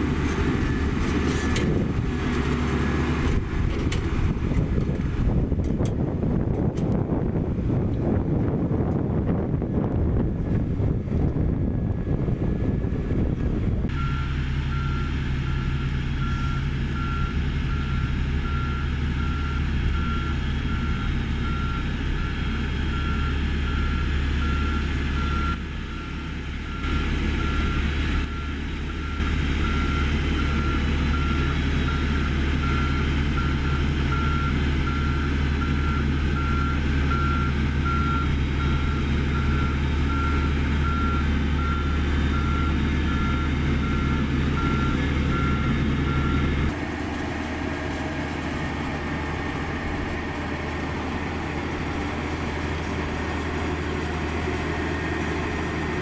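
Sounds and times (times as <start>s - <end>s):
diesel engine drone: 0.0s - 56.0s
reverse alarm beeping: 13.9s - 46.6s.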